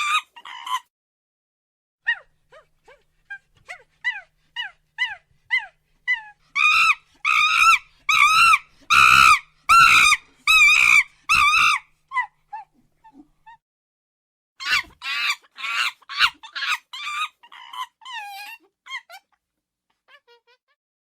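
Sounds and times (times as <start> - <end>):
monkey calling: 3.7 - 12.3, 14.6 - 19.2.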